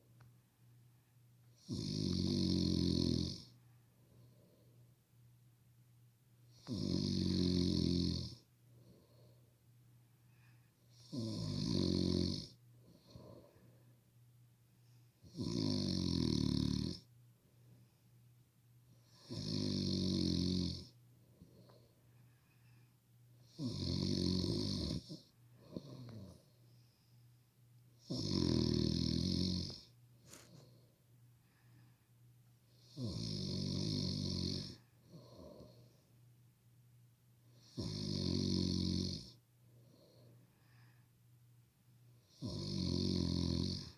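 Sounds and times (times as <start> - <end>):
heavy snoring: 1.6 - 3.5, 6.5 - 8.4, 10.9 - 13.4, 15.2 - 17.0, 19.1 - 20.9, 23.4 - 26.4, 28.0 - 30.6, 32.8 - 35.8, 37.6 - 39.4, 42.3 - 43.9
faint breathing: 3.5 - 5.0, 8.6 - 10.9, 12.8 - 14.1, 21.1 - 23.0, 25.4 - 27.4, 30.2 - 32.2, 39.6 - 41.2.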